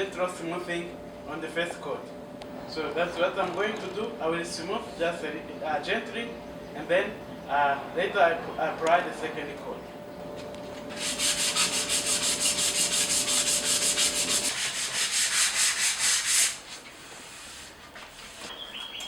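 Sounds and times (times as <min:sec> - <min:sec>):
sanding wood: 0:10.9 - 0:18.4.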